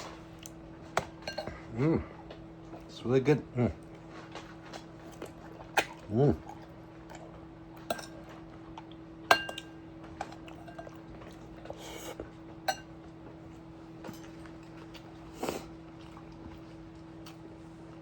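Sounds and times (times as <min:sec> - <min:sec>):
steady low hum: 0:00.0 - 0:18.0
utensils clinking against dishes: 0:01.2 - 0:01.7, 0:04.3 - 0:08.5, 0:09.3 - 0:13.0.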